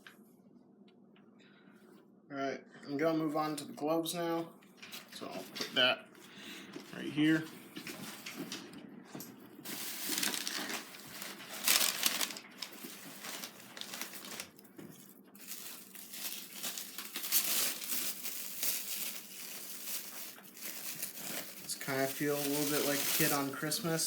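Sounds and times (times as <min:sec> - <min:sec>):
packaging wrap crinkling: 0:09.6 - 0:24.0.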